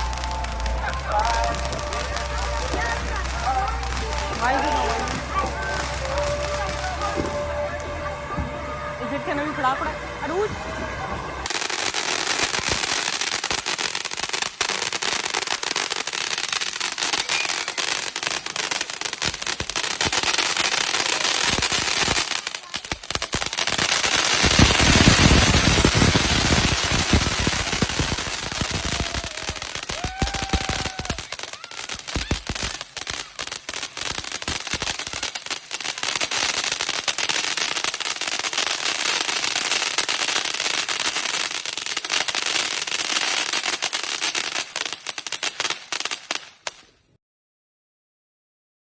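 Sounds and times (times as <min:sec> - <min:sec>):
fireworks crackling and popping: 0:00.0 - 0:47.1
deep firework booms: 0:19.2 - 0:33.4.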